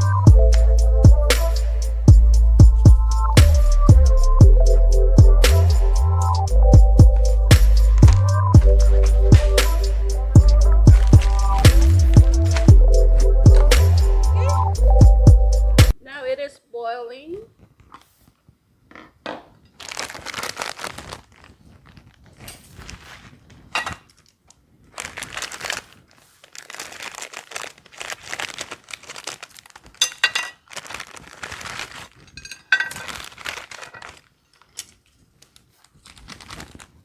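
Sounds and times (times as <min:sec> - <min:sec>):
plastic packaging crinkling and tearing: 0:07.2 - 0:14.0, 0:19.7 - 0:37.0.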